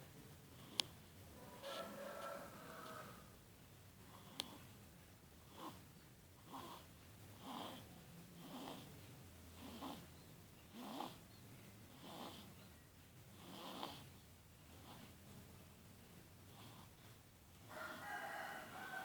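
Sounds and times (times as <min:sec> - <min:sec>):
baby snoring: 0:05.5 - 0:05.8, 0:06.4 - 0:08.9, 0:09.6 - 0:10.1, 0:10.7 - 0:11.2, 0:11.9 - 0:12.6, 0:13.3 - 0:14.1, 0:14.7 - 0:15.2, 0:16.5 - 0:17.0.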